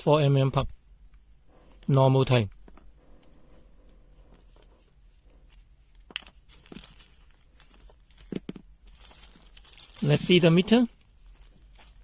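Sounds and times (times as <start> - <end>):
packaging rustling: 5.5 - 12.0.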